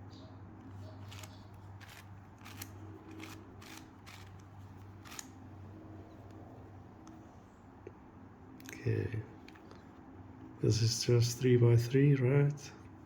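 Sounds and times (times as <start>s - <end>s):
steady low hum: 0.0s - 13.0s
puzzle cube clicks and rasps: 1.0s - 5.3s.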